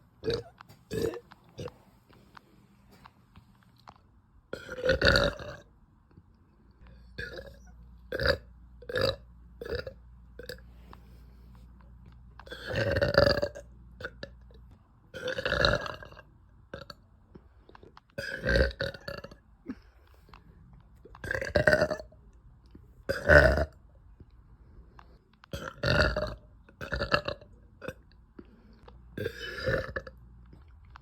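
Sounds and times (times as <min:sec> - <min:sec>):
woman burping: 0:00.2 - 0:01.7, 0:23.1 - 0:23.8, 0:29.2 - 0:30.2.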